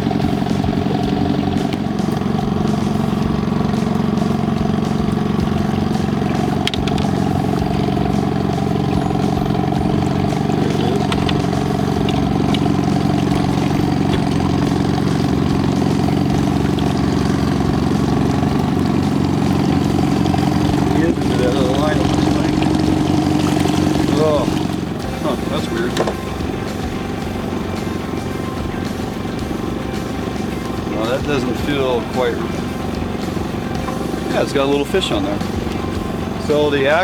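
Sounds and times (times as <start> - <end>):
boat engine humming: 0.0 - 37.0.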